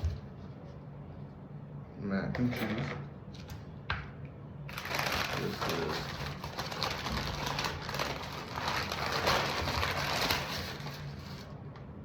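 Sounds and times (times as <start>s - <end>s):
food packaging rustling and crinkling: 4.7s - 11.6s.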